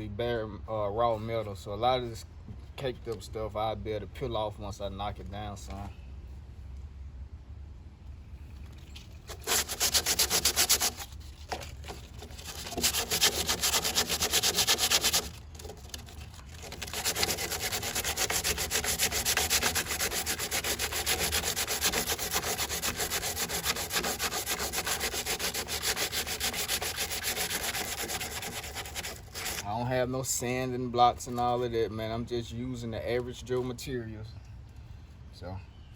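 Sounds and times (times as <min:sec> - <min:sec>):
hand sanding body filler: 0:09.3 - 0:30.1.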